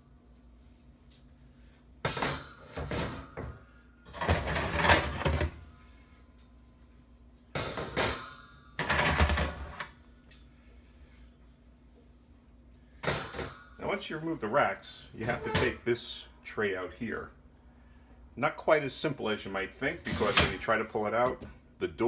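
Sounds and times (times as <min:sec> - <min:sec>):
metal oven racks scraping: 0:04.1 - 0:05.6, 0:15.2 - 0:15.9, 0:20.0 - 0:20.8.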